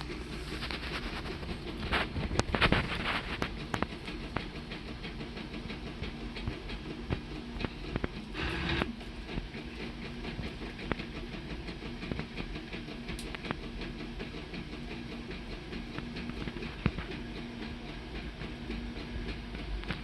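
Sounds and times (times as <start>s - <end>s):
three-d printer hum and rattle: 0.0s - 20.0s
sharp printer clicks: 1.4s - 20.0s.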